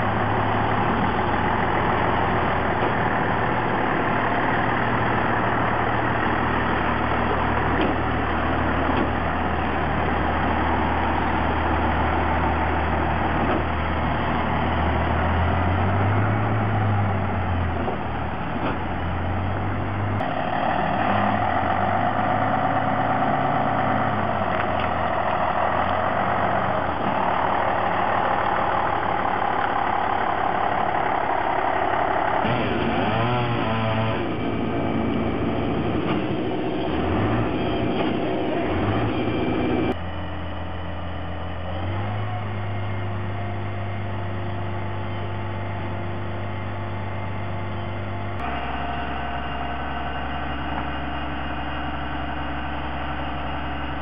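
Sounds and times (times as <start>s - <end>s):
truck engine running: 0.0s - 54.0s.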